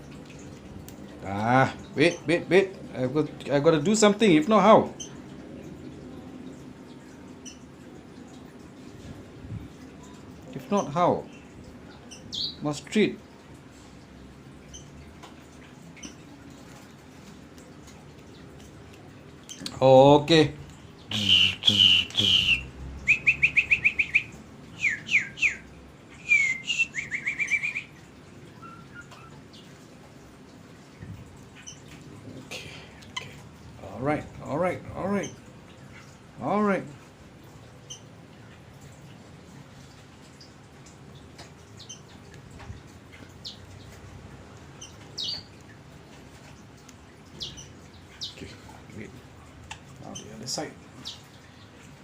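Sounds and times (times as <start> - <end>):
thrush chirping: 21.1 - 28.0.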